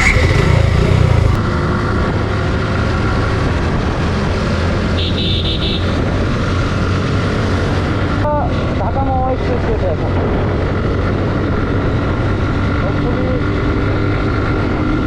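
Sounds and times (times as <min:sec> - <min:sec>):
motorcycle engine running: 0:00.0 - 0:02.1.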